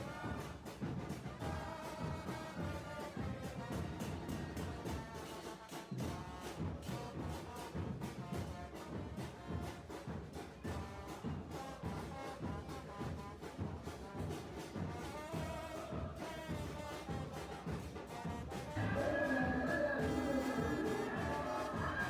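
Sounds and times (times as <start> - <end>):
steady drum beat: 13.4 - 22.0
brass music: 18.6 - 22.0.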